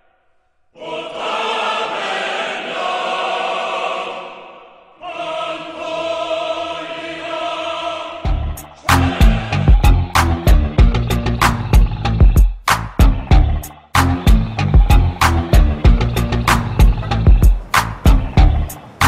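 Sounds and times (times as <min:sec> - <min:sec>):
choir holding chords: 0:00.7 - 0:12.2, 0:13.2 - 0:19.0
drum beat: 0:08.3 - 0:18.8.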